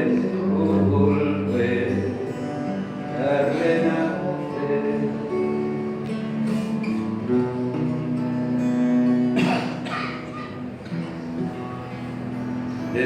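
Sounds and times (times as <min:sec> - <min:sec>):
cello holding long notes: 0:00.0 - 0:09.4
acoustic guitar strummed and plucked: 0:00.0 - 0:13.0.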